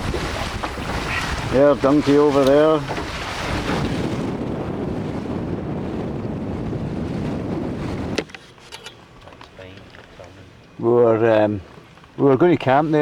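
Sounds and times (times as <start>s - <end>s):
water washing: 0.0s - 8.2s
wind buffeting microphone: 0.0s - 13.0s.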